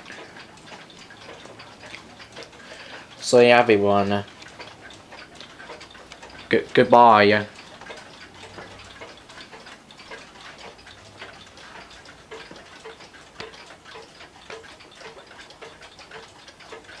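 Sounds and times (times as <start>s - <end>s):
clock ticking: 0.0s - 17.0s.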